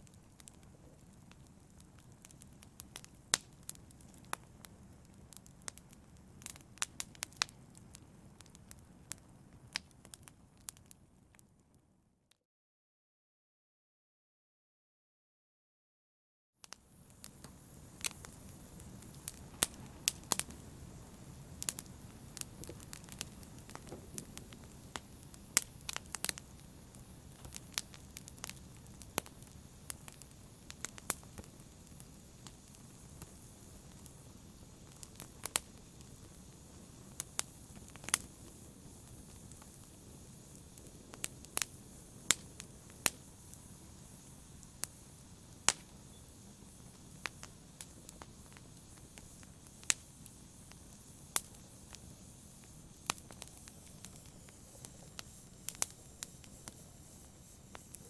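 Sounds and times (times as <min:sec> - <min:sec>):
burning logs crackling and popping: 0:00.0 - 0:11.4, 0:16.6 - 0:58.0
fire flames rushing: 0:17.2 - 0:58.0.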